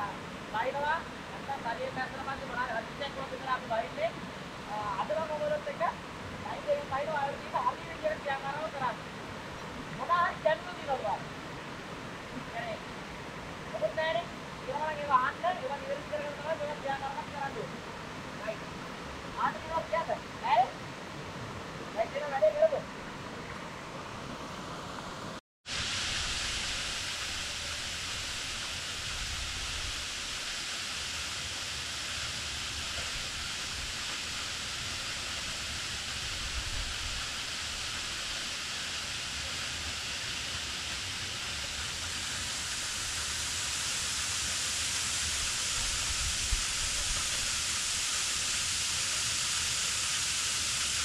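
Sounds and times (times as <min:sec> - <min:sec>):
waterfall rushing: 0:00.0 - 0:51.0.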